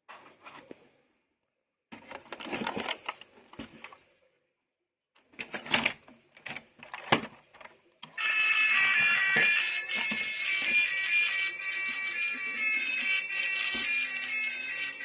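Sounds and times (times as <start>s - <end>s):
plastic toys clattering: 2.0s - 4.0s, 5.4s - 8.2s.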